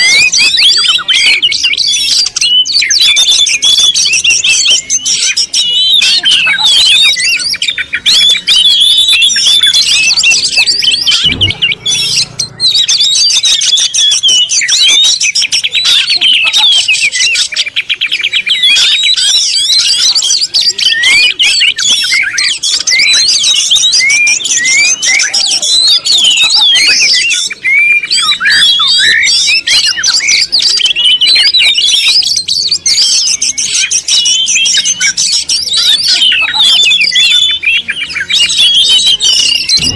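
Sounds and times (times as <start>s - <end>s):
birds chirping: 0.0s - 39.9s
low thump: 11.1s - 12.6s.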